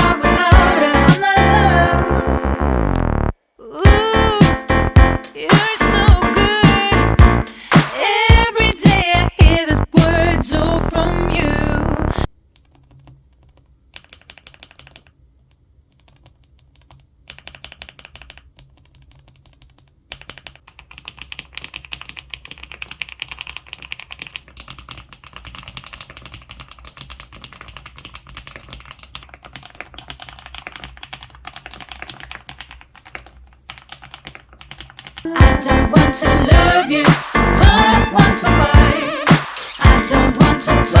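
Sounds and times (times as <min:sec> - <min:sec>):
mechanical keyboard typing: 0:12.6 - 0:35.3.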